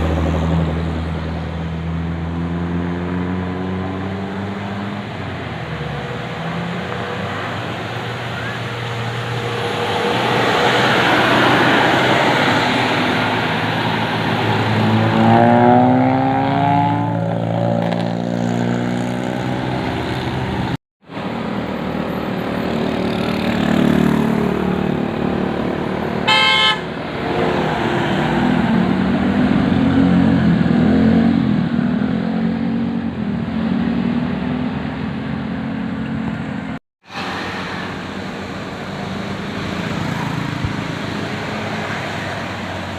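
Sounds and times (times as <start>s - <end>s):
bus engine: 0.0s - 42.9s
road traffic noise: 0.0s - 42.9s
multi-tone bus horn: 26.2s - 27.0s.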